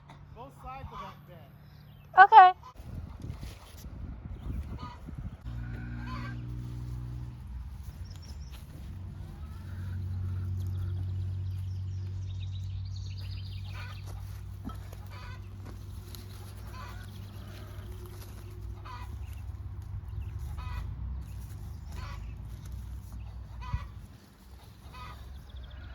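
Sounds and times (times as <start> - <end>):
chickens clucking: 4.4 - 6.8, 8.2 - 11.6, 13.6 - 25.9.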